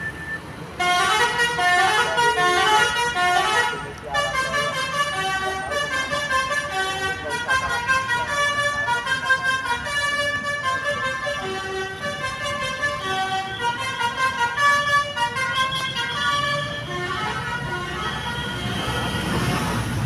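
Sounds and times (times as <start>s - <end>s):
multi-tone horn playing a melody: 0.8s - 19.6s.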